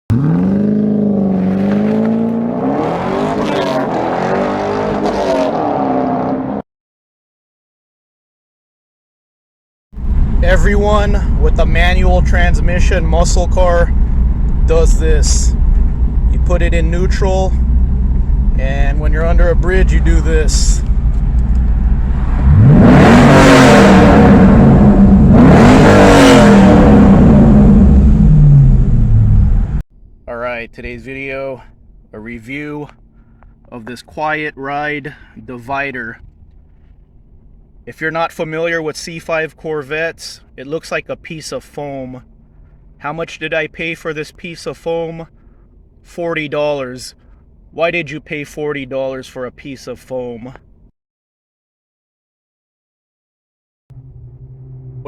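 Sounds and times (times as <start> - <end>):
car engine revving: 0.1 - 6.6, 10.0 - 29.8, 53.9 - 55.0.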